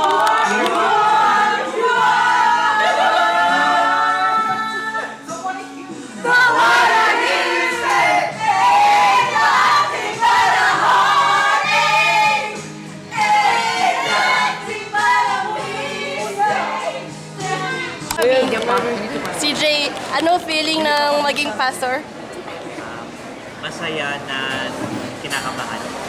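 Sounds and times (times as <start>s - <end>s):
group singing worship song: 0.0s - 18.7s.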